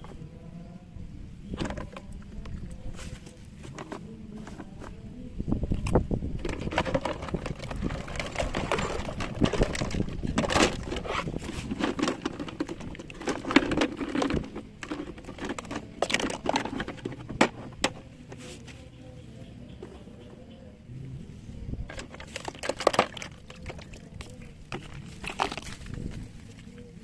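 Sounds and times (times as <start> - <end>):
plastic toy vehicles knocking: 1.5 - 2.7, 5.7 - 18.4, 21.9 - 26.8.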